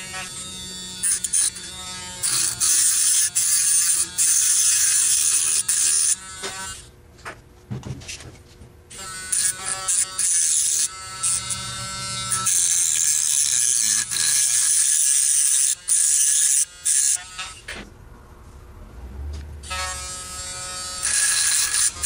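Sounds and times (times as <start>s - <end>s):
rotary tool grinding metal: 0.0s - 6.9s, 8.9s - 17.8s, 19.6s - 22.0s
whining motor tone: 0.0s - 6.9s.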